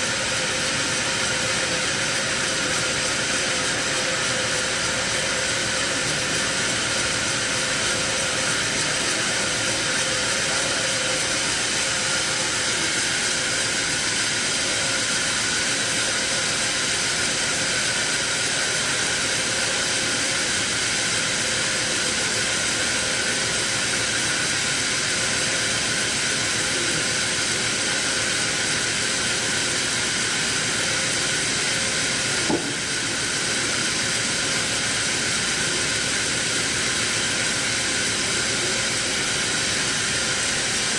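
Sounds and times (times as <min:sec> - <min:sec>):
sawmill saw cutting log: 0:00.0 - 0:40.9
short knock: 0:32.4 - 0:32.9.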